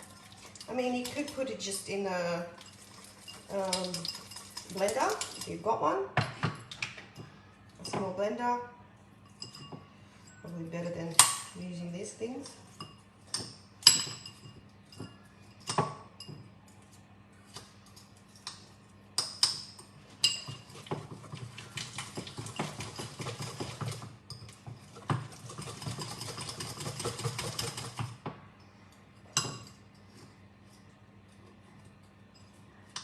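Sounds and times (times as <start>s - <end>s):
utensil clinking against bowl: 2.6s - 5.6s, 19.2s - 28.1s
whisking clicks and scraping: 25.1s - 28.2s.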